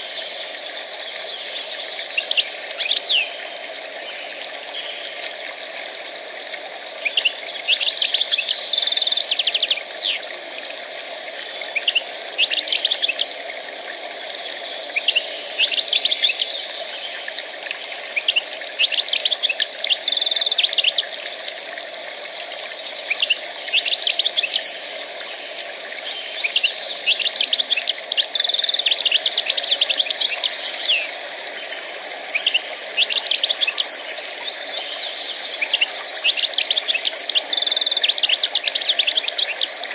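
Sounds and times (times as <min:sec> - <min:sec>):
songbird trilling: 0:23.1 - 0:24.8, 0:26.0 - 0:31.1, 0:32.3 - 0:34.9, 0:35.5 - 0:39.9.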